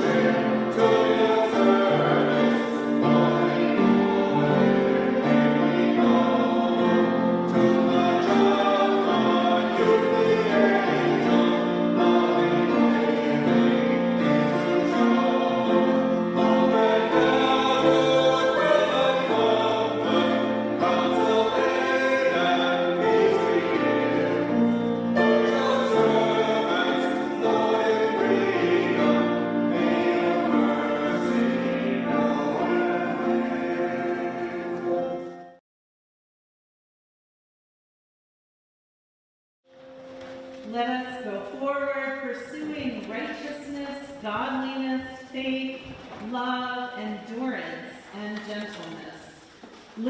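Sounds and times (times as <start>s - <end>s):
instrumental accompaniment: 0.0s - 35.6s
voices singing a hymn: 0.0s - 35.6s.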